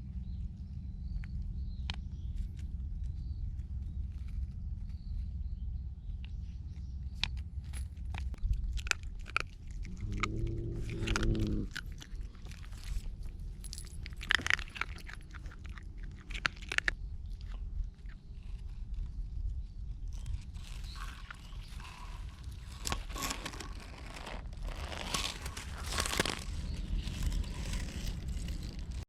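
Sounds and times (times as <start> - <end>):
animal chewing and crunching food: 0.0 - 29.0
low drawn-out sound: 9.8 - 12.3.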